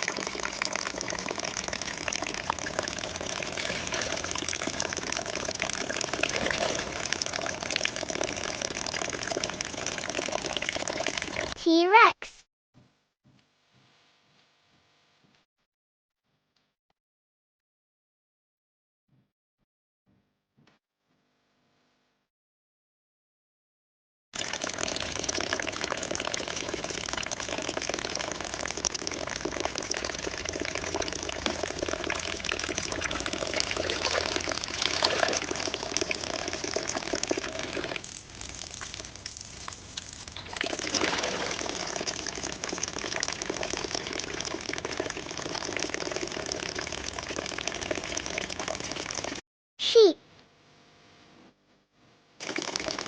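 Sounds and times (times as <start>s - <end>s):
rushing gushing water: 0.0s - 11.6s, 24.4s - 38.0s, 40.4s - 49.4s, 52.4s - 53.0s.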